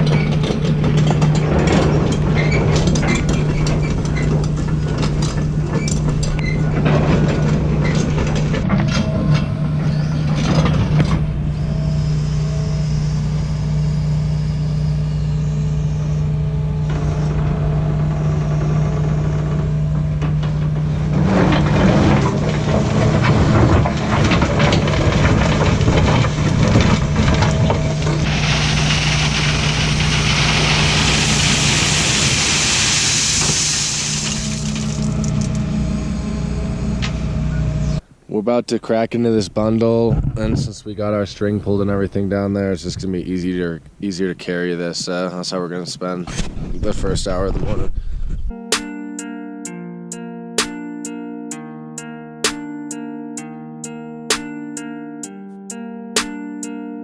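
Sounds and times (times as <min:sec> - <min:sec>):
metal clanking and knocking: 0:00.0 - 0:11.5, 0:20.2 - 0:31.6
heavy diesel machinery running: 0:00.0 - 0:38.0
machinery whining: 0:00.0 - 0:38.0.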